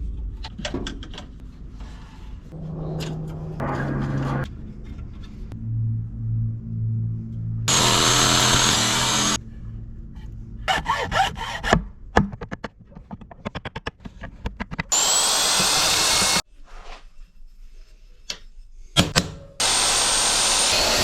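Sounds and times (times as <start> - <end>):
power tool cutting with motor whine: 7.7 - 9.4, 14.9 - 16.4, 19.6 - 21.0
sharp knocks and clicks: 12.1 - 15.0.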